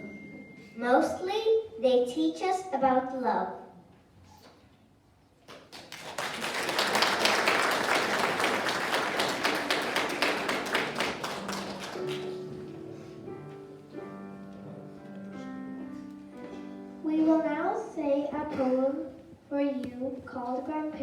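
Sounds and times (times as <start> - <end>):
audience applause: 5.5 - 12.6
soft instrumental music: 9.2 - 18.5.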